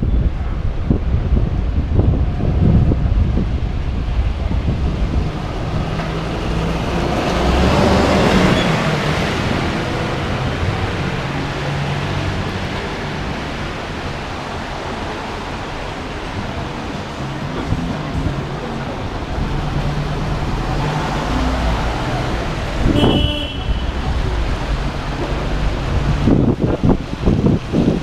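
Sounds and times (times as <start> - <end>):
wind buffeting microphone: 0.0 - 28.0
vehicle passing: 4.1 - 23.2.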